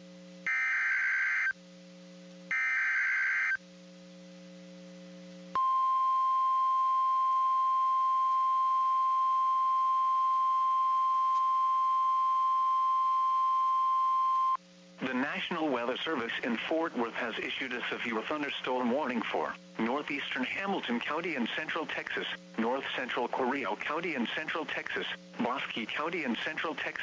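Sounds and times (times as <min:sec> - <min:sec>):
low receiver hum: 0:00.0 - 0:27.0
steady warning alarm tone: 0:00.5 - 0:01.5, 0:02.5 - 0:03.6.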